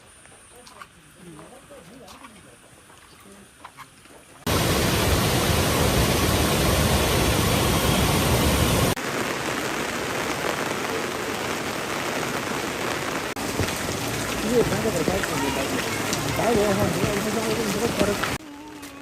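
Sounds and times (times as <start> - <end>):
steady rain: 4.4 - 19.0.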